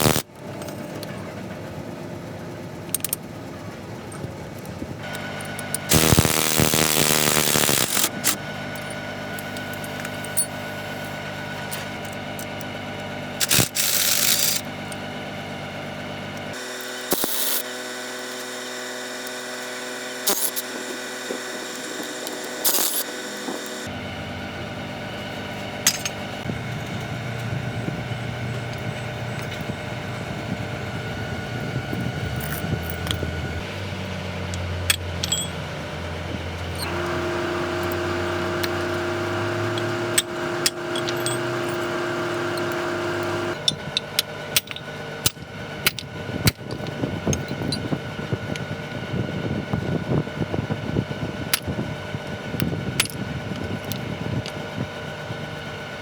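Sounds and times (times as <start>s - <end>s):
power tool bursts: 0.0s - 0.3s, 5.0s - 11.3s, 13.4s - 14.6s, 16.5s - 23.9s, 36.8s - 43.7s
steady mechanical hum: 0.0s - 56.0s.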